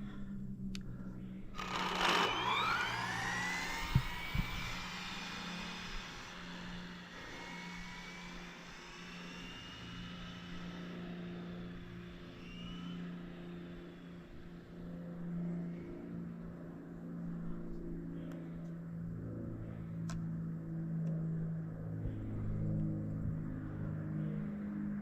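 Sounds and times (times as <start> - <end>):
vehicle low hum: 0.0 - 25.0
high whines gliding down: 1.6 - 14.6.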